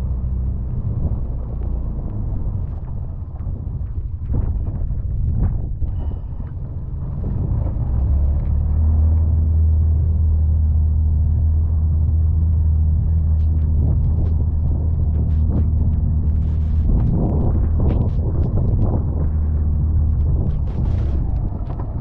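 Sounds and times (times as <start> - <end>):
vehicle engine droning: 0.0 - 22.0
clicks and scrapes: 13.4 - 22.0.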